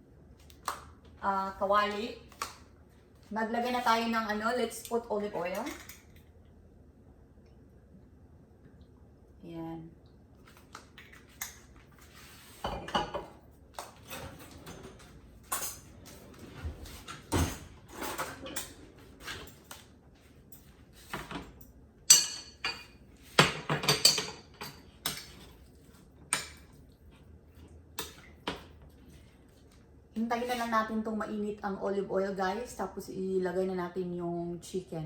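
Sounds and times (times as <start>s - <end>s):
cookware clinking and knocking: 22.1s - 25.2s.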